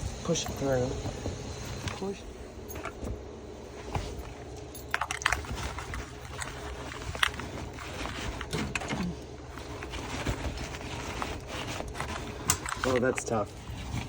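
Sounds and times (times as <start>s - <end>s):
fabric rustling: 1.1s - 14.0s.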